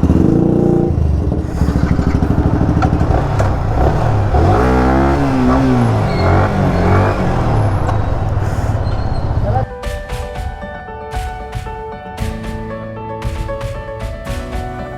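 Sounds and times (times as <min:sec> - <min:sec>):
motorcycle engine revving: 0:00.0 - 0:09.7.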